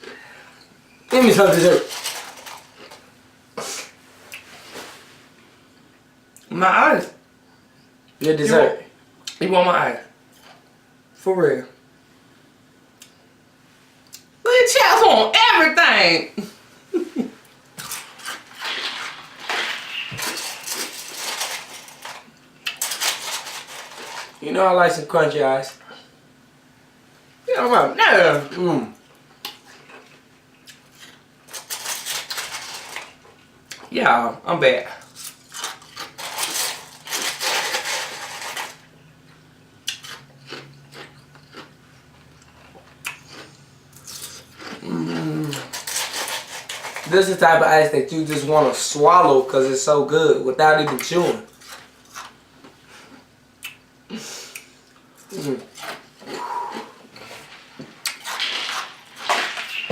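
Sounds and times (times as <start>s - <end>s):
chewing crushed ice: 1.1s - 3.0s, 17.5s - 24.4s, 29.4s - 33.4s, 35.0s - 47.4s, 51.0s - 52.8s, 54.6s - 59.9s.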